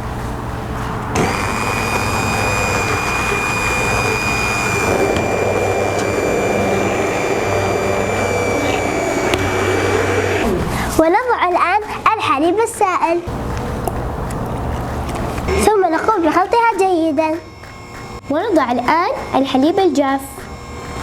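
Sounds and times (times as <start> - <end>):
electric blender whining: 1.1 - 11.0, 16.2 - 21.0.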